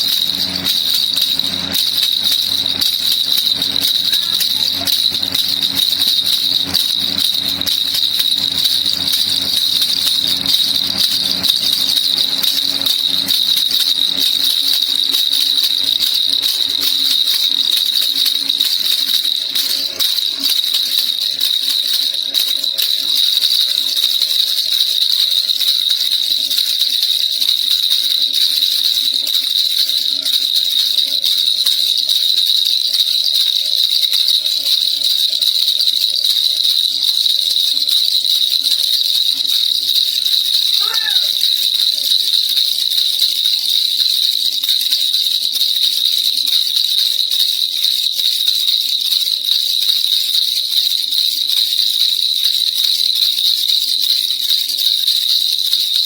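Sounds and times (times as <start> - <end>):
baby rattle jingling: 0.0 - 56.0.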